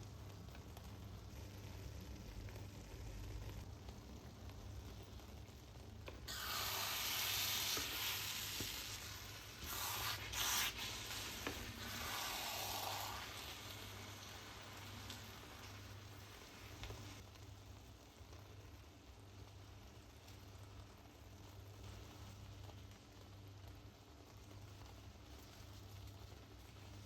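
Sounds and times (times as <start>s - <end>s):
food sizzling in hot oil: 0.0s - 17.2s.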